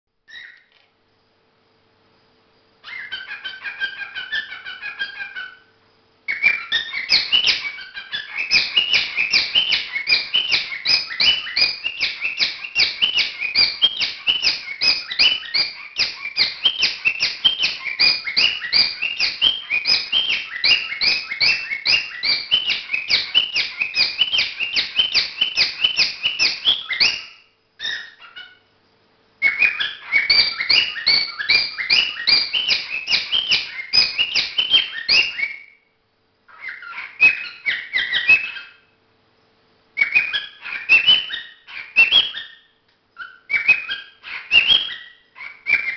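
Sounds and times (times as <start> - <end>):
cockatiel warbling and chirping: 0.3 - 0.7, 2.8 - 5.7, 6.3 - 28.7, 29.4 - 35.8, 36.5 - 38.9, 40.0 - 45.9.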